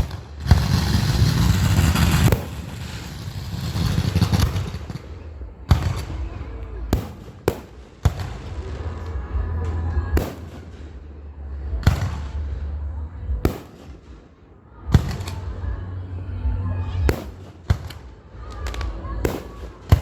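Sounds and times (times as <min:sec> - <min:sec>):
fireworks crackling hiss: 0:00.0 - 0:06.3
fireworks bangs: 0:00.0 - 0:09.3, 0:10.2 - 0:11.0, 0:17.0 - 0:20.0.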